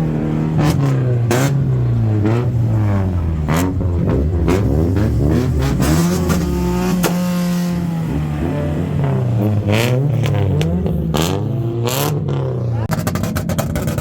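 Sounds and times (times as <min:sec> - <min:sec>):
car engine revving: 0:00.0 - 0:14.0
exhaust pops: 0:00.6 - 0:11.4.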